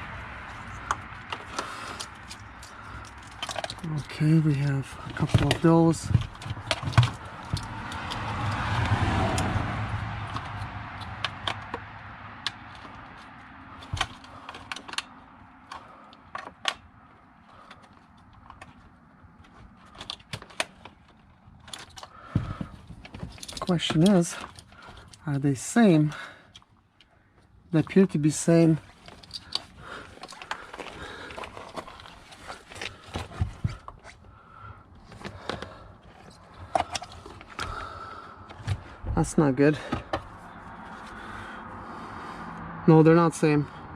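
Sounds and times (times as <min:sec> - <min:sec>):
plastic connectors clicking and rattling: 0:00.6 - 0:08.6, 0:10.2 - 0:16.9, 0:19.4 - 0:25.2, 0:28.9 - 0:34.0, 0:35.1 - 0:37.9.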